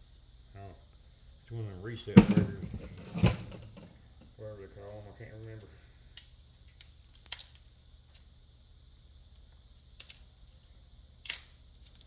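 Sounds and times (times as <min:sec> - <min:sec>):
low steady hum: 0:01.9 - 0:04.8.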